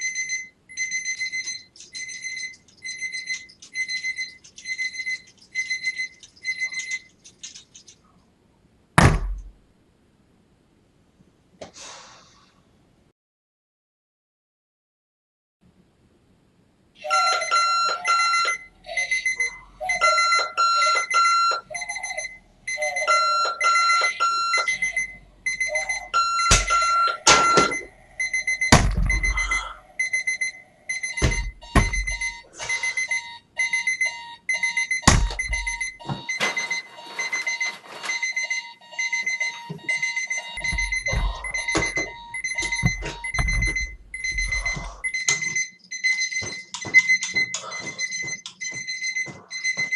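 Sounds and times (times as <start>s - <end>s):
alarm clock beeping: 0.0s - 7.2s, 17.0s - 49.9s
heavy thumps: 9.0s - 9.6s, 26.5s - 29.7s, 31.2s - 32.4s, 35.1s - 36.7s, 40.6s - 45.6s.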